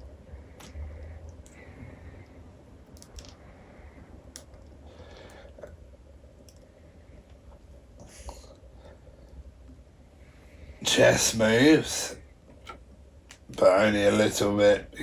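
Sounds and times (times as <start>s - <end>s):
faint plastic clicks: 0.5s - 8.7s.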